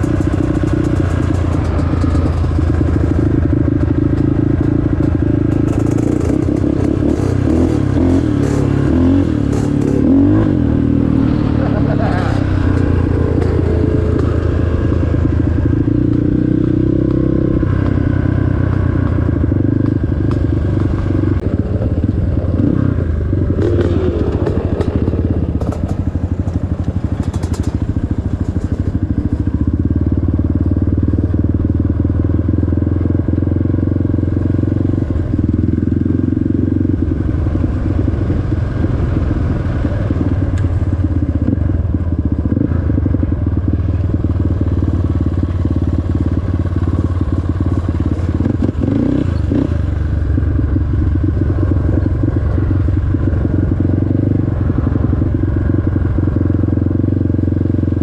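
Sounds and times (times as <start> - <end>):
clatters and knocks: 0.0 - 7.6, 23.6 - 29.4
off-road vehicle engine running: 0.0 - 58.0.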